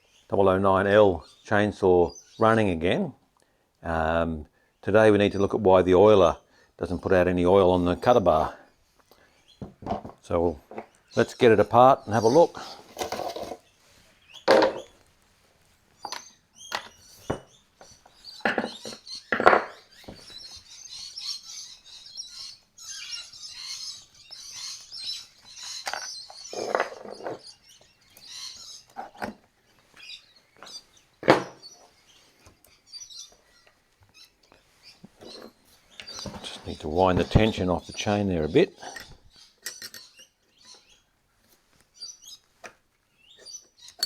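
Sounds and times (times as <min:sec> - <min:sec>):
tool clunks and knocks: 0:09.6 - 0:10.9, 0:14.5 - 0:14.9, 0:18.4 - 0:20.2, 0:31.2 - 0:31.6.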